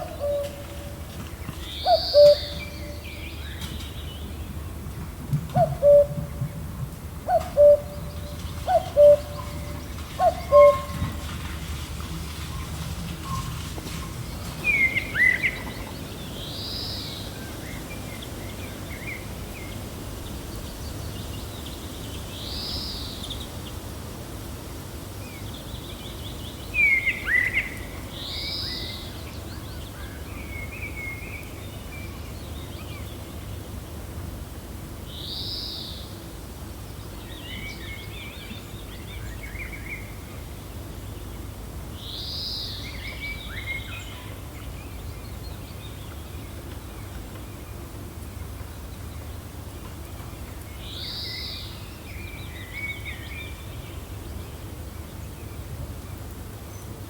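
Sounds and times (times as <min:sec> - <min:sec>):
birds chirping: 0:00.0 - 0:04.7, 0:07.3 - 0:11.7
gentle wind: 0:00.0 - 0:57.0.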